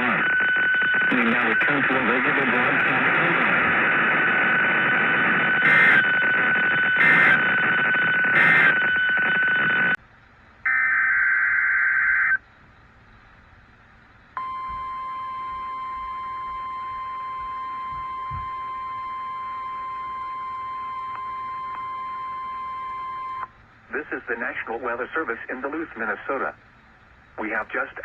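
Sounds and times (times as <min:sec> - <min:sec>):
data bursts: 0:00.0 - 0:10.0
radio reception hiss: 0:00.0 - 0:10.0, 0:23.8 - 0:28.0
warbling data burst: 0:00.5 - 0:10.0
single-pitch warning alarm tone: 0:04.5 - 0:10.0, 0:14.4 - 0:23.5.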